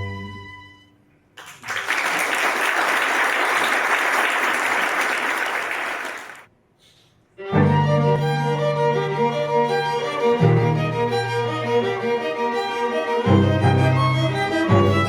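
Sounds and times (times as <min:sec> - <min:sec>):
audience applauding: 0:01.4 - 0:06.5
string quartet playing: 0:07.4 - 0:15.0.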